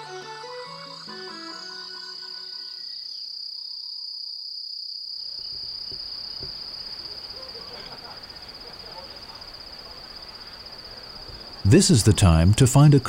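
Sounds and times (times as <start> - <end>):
music: 0.0 - 3.0
insects chirring: 0.0 - 13.0
outdoor background noise: 0.0 - 13.0.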